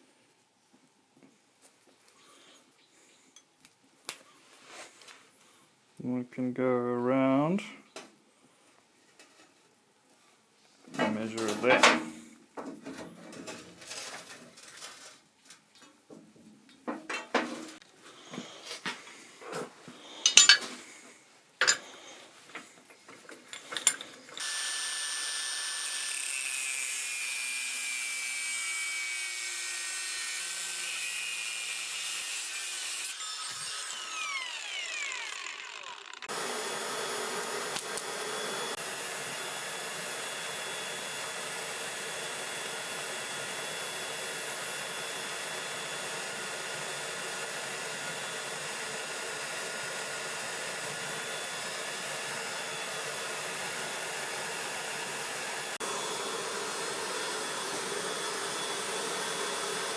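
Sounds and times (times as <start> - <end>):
angle grinder cutting steel: 20.1 - 20.7, 23.6 - 59.9
light metal clinks: 20.2 - 20.7
forge blower hissing: 29.3 - 59.9.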